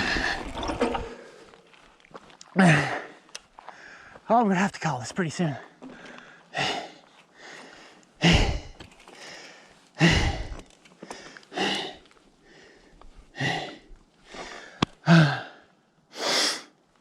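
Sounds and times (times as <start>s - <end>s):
person breathing hard: 2.6s - 4.3s, 5.8s - 16.7s.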